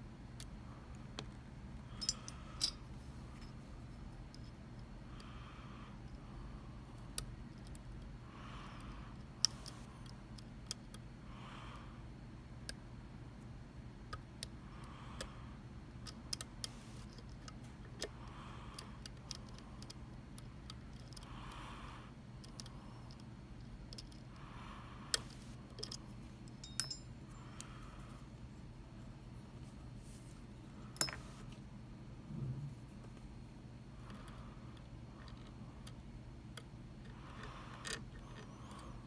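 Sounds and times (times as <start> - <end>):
lock pick clicking against pins: 16.0 - 21.3, 22.4 - 24.4, 25.1 - 27.7, 34.8 - 38.8.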